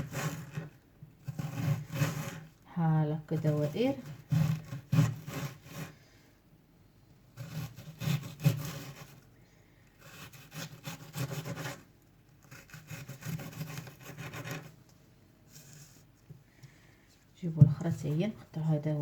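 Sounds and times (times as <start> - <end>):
knife slicing onion on cutting board: 0.0 - 2.4, 3.5 - 5.9, 7.4 - 9.2, 10.0 - 11.8, 12.4 - 14.7.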